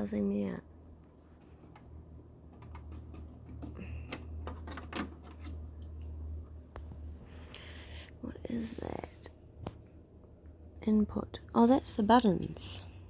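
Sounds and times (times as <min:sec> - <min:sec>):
low steady hum: 0:00.0 - 0:13.0
plastic and metal parts clicking: 0:01.4 - 0:05.9.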